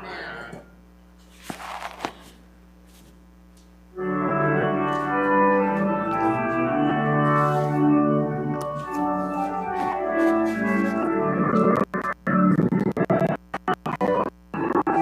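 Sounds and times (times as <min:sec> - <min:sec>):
low steady hum: 0:00.0 - 0:12.3
organ chords: 0:03.8 - 0:12.8, 0:13.7 - 0:15.0.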